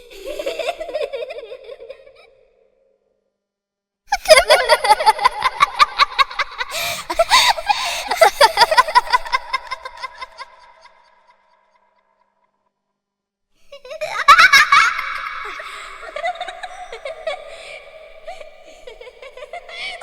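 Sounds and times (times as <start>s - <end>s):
children giggling: 0.0s - 2.4s, 4.1s - 11.1s, 13.7s - 20.0s.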